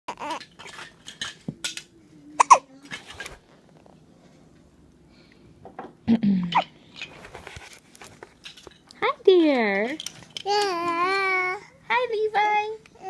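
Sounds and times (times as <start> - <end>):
baby hiccuping: 2.4 - 2.7.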